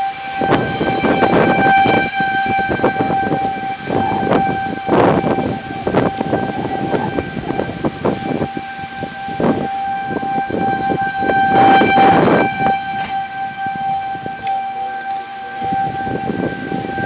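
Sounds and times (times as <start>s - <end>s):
warning siren steady tone: 0.0s - 17.0s.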